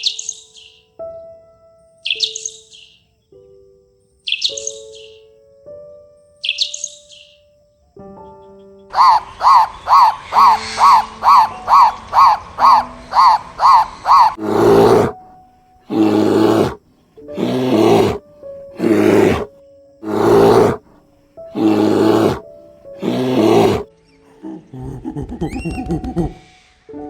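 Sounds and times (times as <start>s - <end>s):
faint background music: 0.0s - 27.0s
animal calling: 8.9s - 18.2s, 18.8s - 26.5s.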